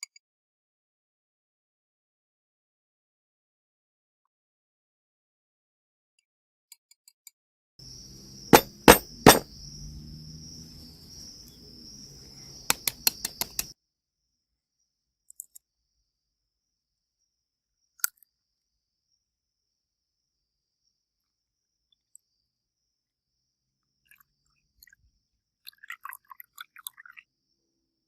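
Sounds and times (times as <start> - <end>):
sharp clicks and clinks: 8.5 - 9.5, 12.7 - 13.7.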